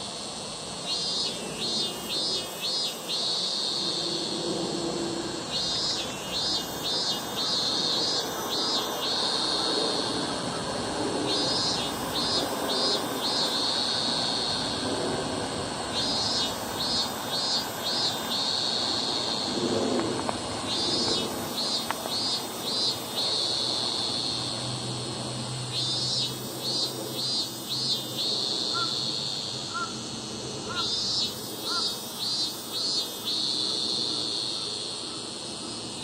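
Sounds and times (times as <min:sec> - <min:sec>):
insect buzzing and chirping: 0:00.0 - 0:36.0.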